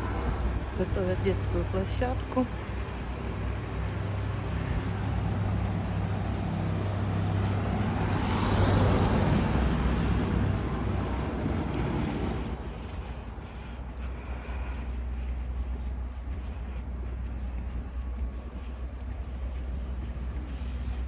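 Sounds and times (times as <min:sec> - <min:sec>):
low traffic hum: 0:00.0 - 0:21.0
vehicle driving past: 0:02.7 - 0:13.1.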